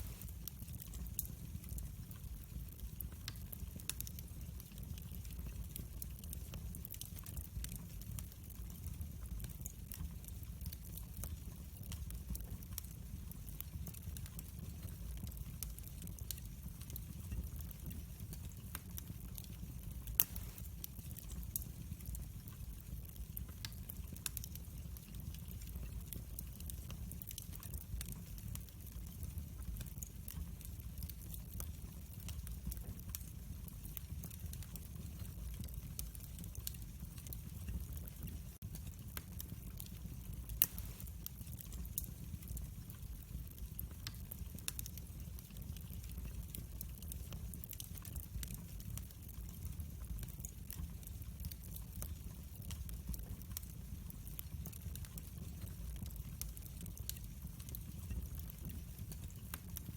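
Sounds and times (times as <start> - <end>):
low rumble of flame: 0.0 - 59.9
wood fire crackling: 0.0 - 59.9.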